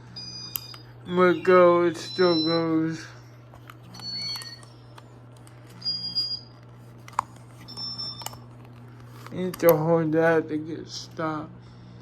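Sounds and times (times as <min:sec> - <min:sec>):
ceiling fan motor humming: 0:00.0 - 0:12.0.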